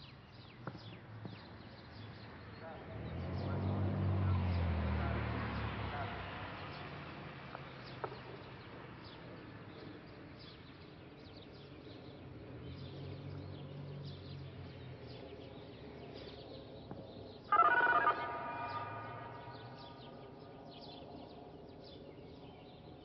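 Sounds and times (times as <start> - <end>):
small birds chirping: 7.5 - 23.0.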